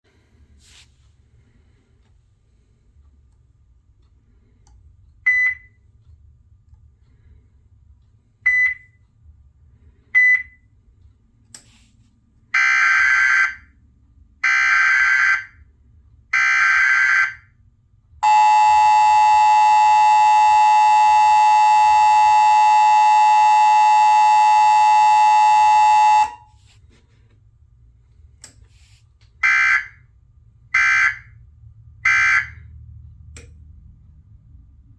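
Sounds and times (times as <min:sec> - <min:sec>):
two-tone attention signal: 0:18.2 - 0:26.4.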